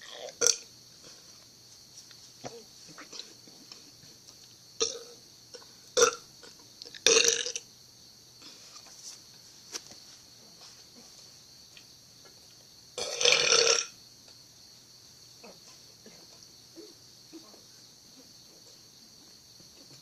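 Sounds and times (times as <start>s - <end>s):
person burping: 4.8s - 5.1s, 7.1s - 7.6s, 13.0s - 13.9s.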